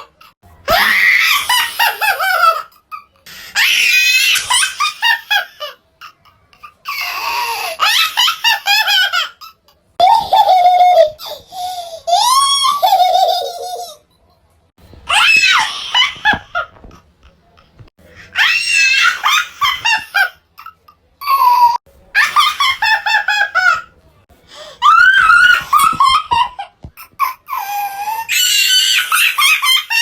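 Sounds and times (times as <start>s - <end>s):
high-pitched cartoon laughs: 0.7s - 2.8s.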